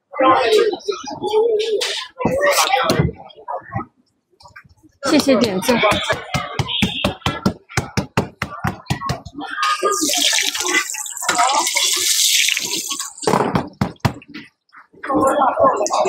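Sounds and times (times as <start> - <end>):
dough sizzling in hot oil: 9.9 - 13.2.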